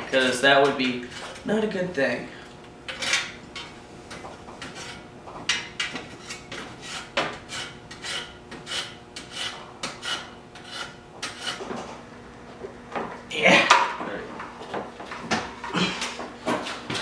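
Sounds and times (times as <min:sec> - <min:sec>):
hand tools scraping metal: 0:00.0 - 0:02.1, 0:02.9 - 0:11.9.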